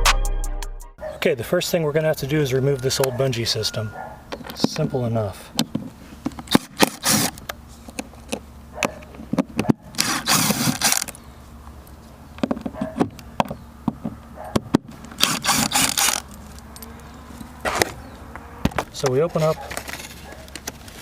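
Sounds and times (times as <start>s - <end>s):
rough scraping rustles: 14.9s - 21.0s.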